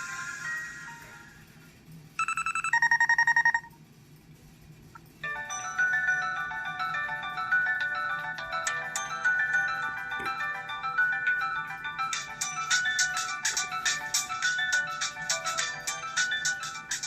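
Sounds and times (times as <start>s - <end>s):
electronic trill ringtone: 2.2s - 3.7s, 5.2s - 17.0s
melodic polyphonic ringtone: 2.2s - 3.7s, 5.2s - 17.0s.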